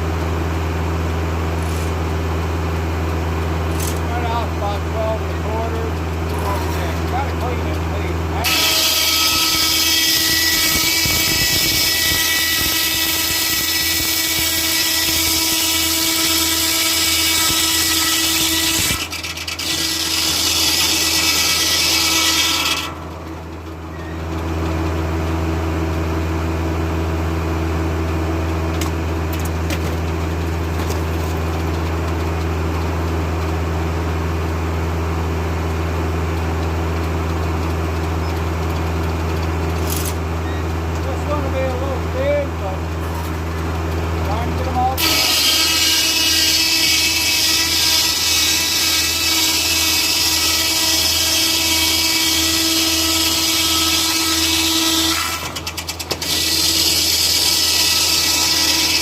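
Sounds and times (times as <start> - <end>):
tractor engine hum: 0.0 - 8.5, 22.8 - 45.0
circular saw cutting log: 3.7 - 31.9, 41.0 - 43.6, 44.2 - 59.0.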